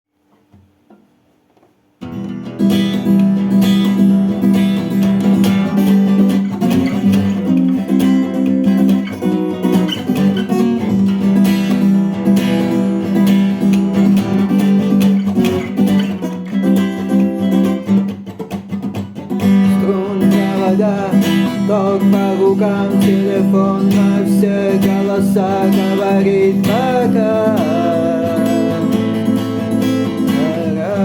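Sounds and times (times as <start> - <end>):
acoustic guitar strumming: 0.2 - 31.0.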